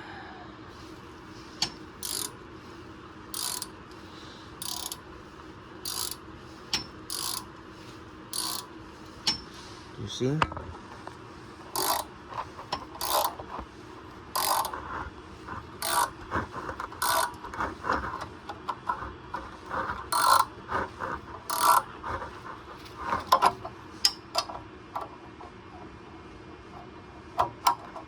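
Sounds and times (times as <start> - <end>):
ratchet wrench clicking: 1.6 - 2.4, 3.3 - 3.7, 4.6 - 5.0, 5.8 - 7.5, 8.3 - 9.5, 11.8 - 12.1, 13.0 - 13.4, 14.4 - 14.8, 15.8 - 16.2, 16.9 - 17.4, 20.1 - 20.5, 21.5 - 21.9.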